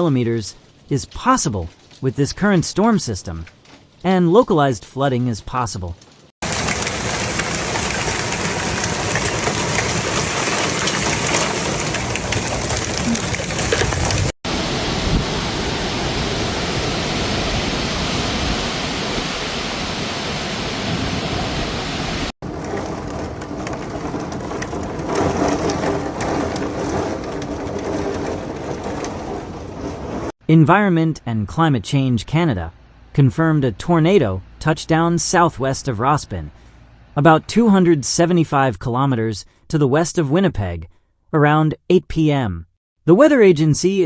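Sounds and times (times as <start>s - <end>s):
heavy rain pouring: 6.4s - 30.3s.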